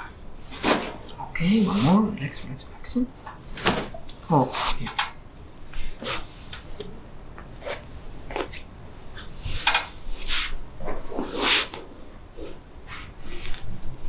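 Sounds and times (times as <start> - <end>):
rustling: 0.4 - 5.0.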